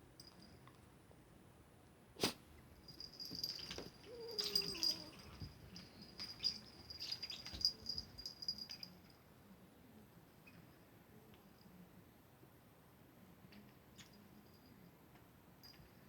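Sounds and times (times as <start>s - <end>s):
cat toy rattling and jingling: 2.9s - 9.1s.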